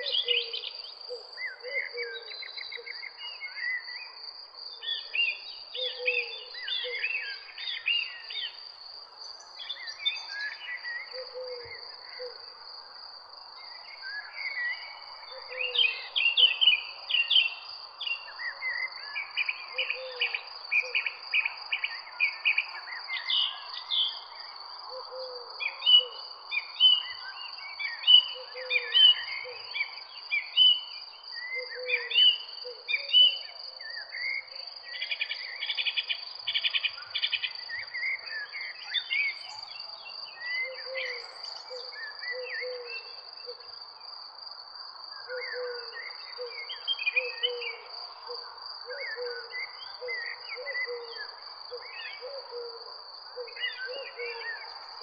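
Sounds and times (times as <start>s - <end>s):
birds chirping and singing: 36.6s - 43.6s, 48.9s - 52.8s.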